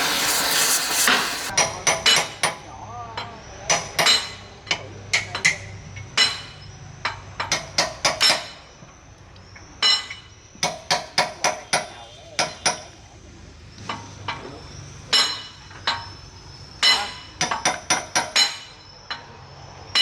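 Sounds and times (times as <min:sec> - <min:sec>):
hammer striking steel: 0:00.0 - 0:02.3.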